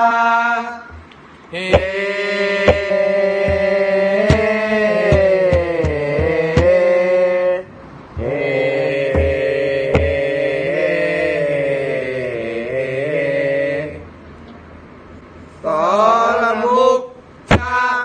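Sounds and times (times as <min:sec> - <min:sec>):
male chorus chanting: 0:00.0 - 0:14.1, 0:15.6 - 0:18.0
low drum beats: 0:01.7 - 0:02.0, 0:02.6 - 0:06.9, 0:09.0 - 0:10.3.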